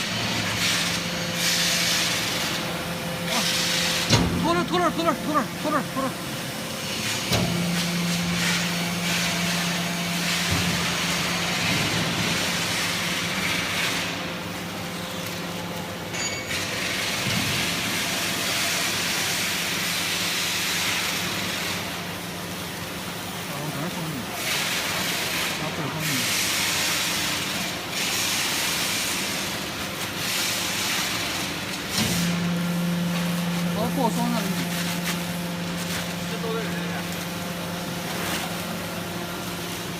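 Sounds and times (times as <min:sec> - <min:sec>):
baling machine running: 0:00.0 - 0:14.9, 0:22.7 - 0:39.9
steady motor hum: 0:00.0 - 0:39.9
baling machine loud hiss: 0:03.2 - 0:04.4.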